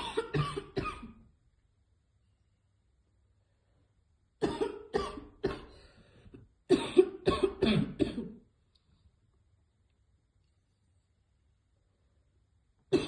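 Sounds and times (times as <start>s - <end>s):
woman coughing hard: 0.0s - 1.2s, 4.4s - 5.7s, 6.7s - 8.4s.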